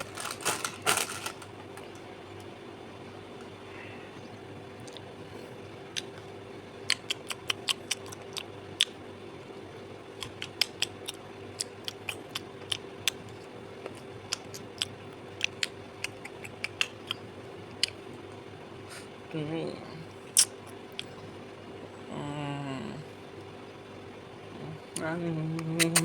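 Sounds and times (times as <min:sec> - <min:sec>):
plastic wrappers crackling: 0:00.0 - 0:01.6.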